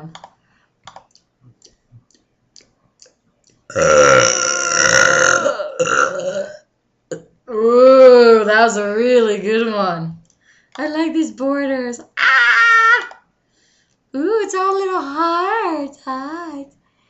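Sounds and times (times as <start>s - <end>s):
faint clicks: 0.1s - 3.6s
loud burp: 3.7s - 7.3s.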